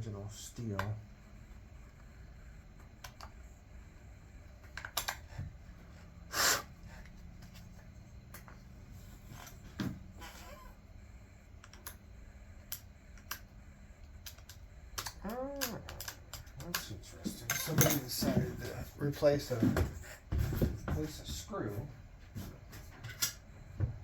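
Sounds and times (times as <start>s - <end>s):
hand tools clicking and tapping: 14.2s - 18.8s.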